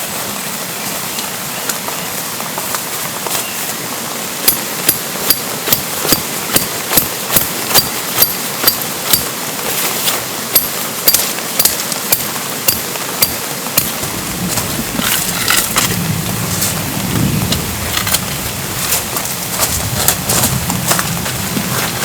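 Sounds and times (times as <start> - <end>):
rain hissing: 0.0 - 22.0
hammer striking metal: 4.5 - 9.3.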